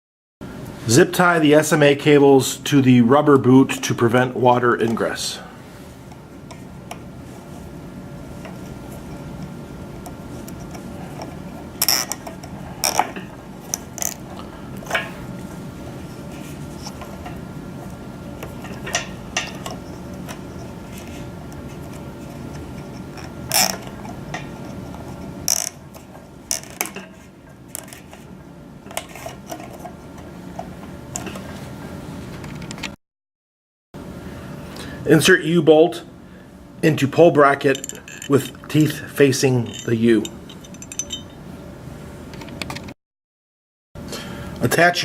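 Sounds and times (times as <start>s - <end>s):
steady low hum: 0.4s - 32.9s, 34.0s - 43.0s
small parts clicking and knocking: 11.2s - 14.2s, 23.1s - 24.5s, 25.5s - 27.1s, 37.7s - 38.7s.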